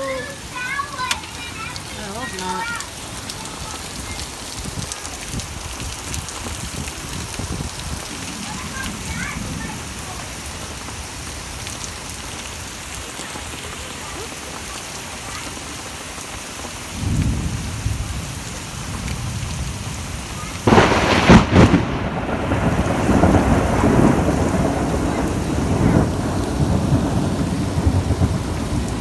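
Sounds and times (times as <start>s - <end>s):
thunder rumbling and cracking: 0.0s - 12.2s, 16.9s - 29.0s
steady rain: 0.0s - 29.0s.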